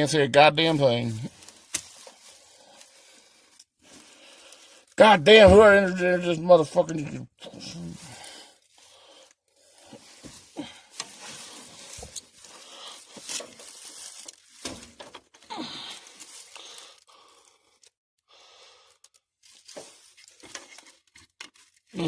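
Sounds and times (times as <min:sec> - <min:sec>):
scraping and rustling of tools: 0:01.0 - 0:04.8, 0:07.6 - 0:17.0, 0:19.0 - 0:22.0.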